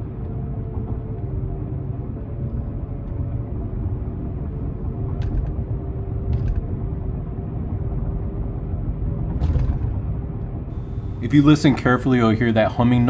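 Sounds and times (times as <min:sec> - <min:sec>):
car driving with low rumble: 0:00.0 - 0:13.0
wheel bearing humming drone: 0:10.5 - 0:13.0.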